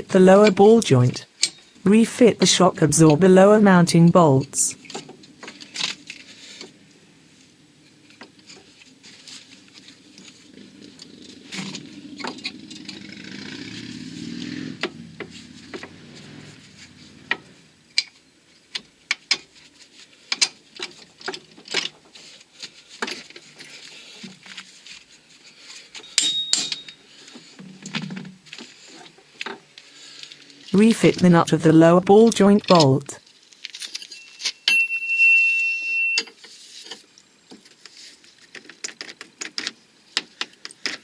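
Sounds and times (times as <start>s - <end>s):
metal tools clinking on steel: 0.4s - 3.2s, 25.9s - 28.3s, 33.7s - 37.0s
short metallic ring: 26.0s - 27.0s, 34.0s - 36.4s.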